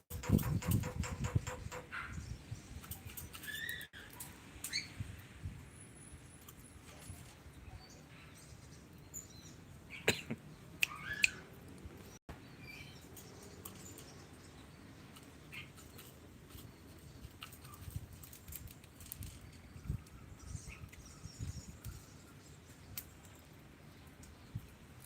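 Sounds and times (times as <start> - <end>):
lovebird chirping: 7.6 - 16.0.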